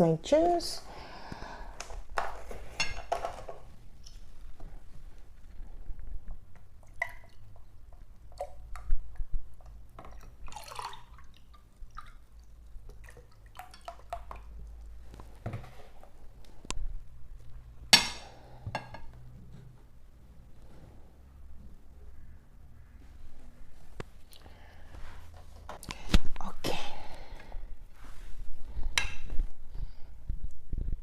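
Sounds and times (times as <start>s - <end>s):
liquid pouring: 10.0s - 14.5s.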